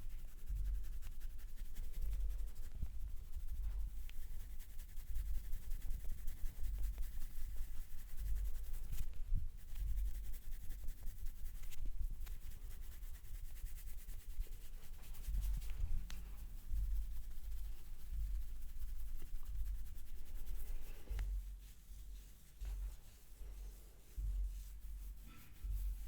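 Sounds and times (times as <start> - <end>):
hands rubbing scalp and hair: 0.0 - 26.0
low thuds from pressing hands: 24.2 - 26.0.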